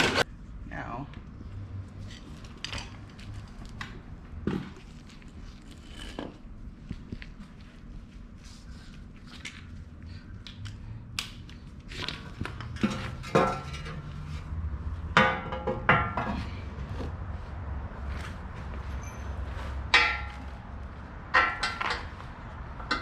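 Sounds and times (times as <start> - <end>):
metal tools clinking and clanking: 12.1 - 14.1, 18.8 - 20.7, 21.3 - 23.0.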